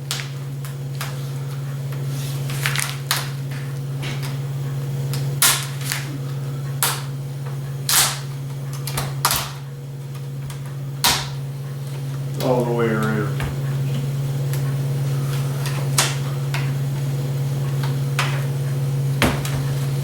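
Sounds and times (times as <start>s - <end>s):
steady low hum: 0.0s - 20.0s
plastic clips snapping: 7.9s - 9.6s.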